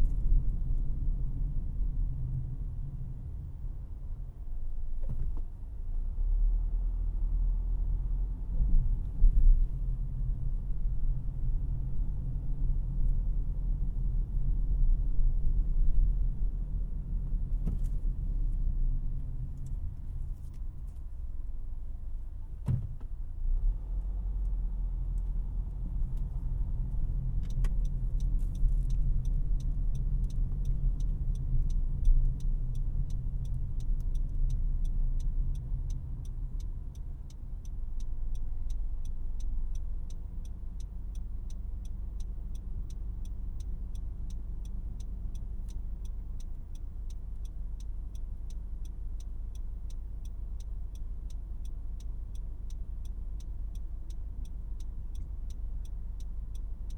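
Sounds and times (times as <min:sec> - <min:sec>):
road and engine rumble: 0:00.0 - 0:56.9
turn signal ticking: 0:00.0 - 0:56.9.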